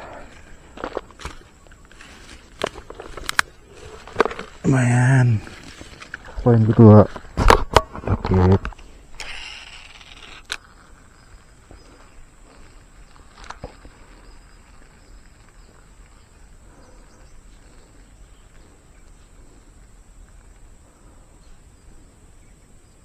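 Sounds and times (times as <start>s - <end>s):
insect drone: 0.0s - 23.0s
sharp clicks: 1.0s - 10.8s
short hiss: 9.2s - 10.6s.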